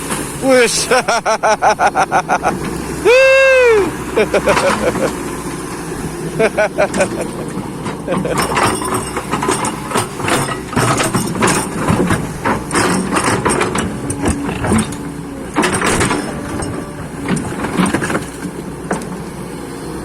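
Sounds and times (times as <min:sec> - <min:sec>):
diesel engine running: 0:00.0 - 0:20.0
knocks and clanks: 0:04.3 - 0:05.2, 0:06.4 - 0:19.2.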